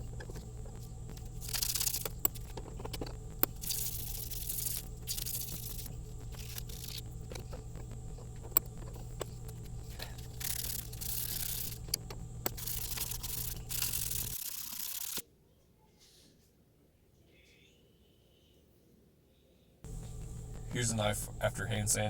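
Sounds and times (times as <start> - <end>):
steady low hum: 0.0 - 15.2, 19.8 - 22.0
sandpaper rubbing wood: 8.9 - 11.8.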